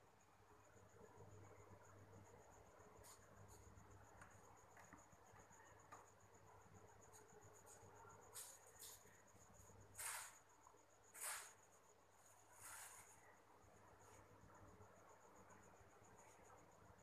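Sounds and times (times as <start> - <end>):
faint scratches: 9.9 - 10.5, 11.1 - 14.3.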